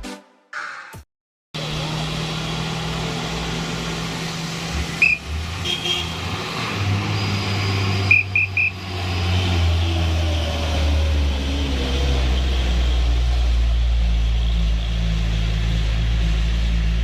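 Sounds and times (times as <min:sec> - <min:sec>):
diesel engine running low: 0:01.6 - 0:17.0
short high beeps: 0:08.1 - 0:08.7.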